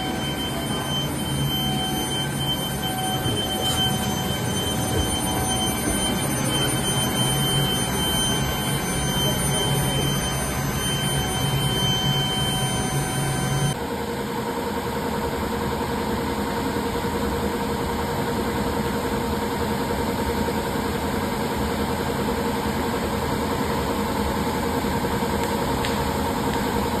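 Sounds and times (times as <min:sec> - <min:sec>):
electrical hum: 0:00.0 - 0:13.8
high-pitched whines: 0:00.0 - 0:13.8.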